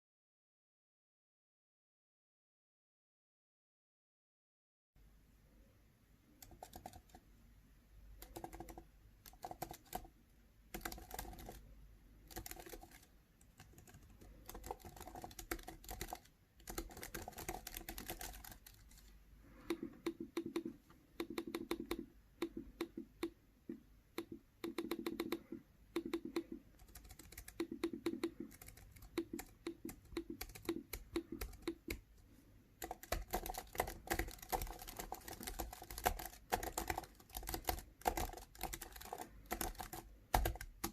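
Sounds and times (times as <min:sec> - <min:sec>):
computer keyboard typing: 0:06.4 - 0:07.2, 0:08.2 - 0:10.1, 0:10.7 - 0:32.2, 0:32.8 - 0:40.9.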